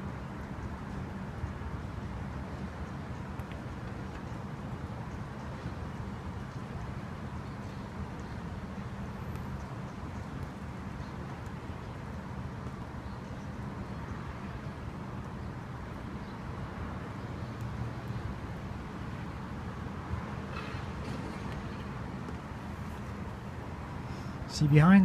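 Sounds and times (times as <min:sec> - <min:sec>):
faint high ticks: 0:02.6 - 0:04.4.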